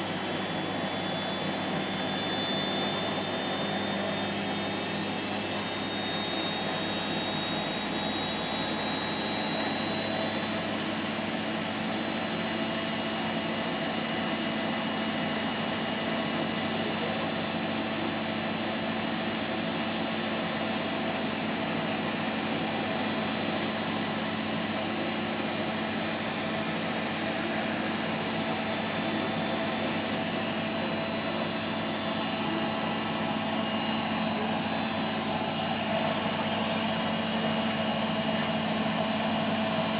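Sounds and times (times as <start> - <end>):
constant whine: 0.0 - 39.9
washing machine spinning: 0.0 - 39.9.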